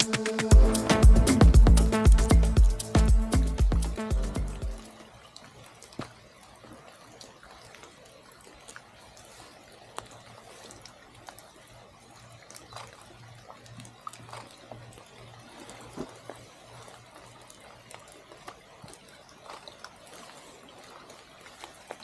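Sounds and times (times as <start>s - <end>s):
water trickling and dripping: 0.0s - 22.0s
small drips and taps: 4.8s - 22.0s.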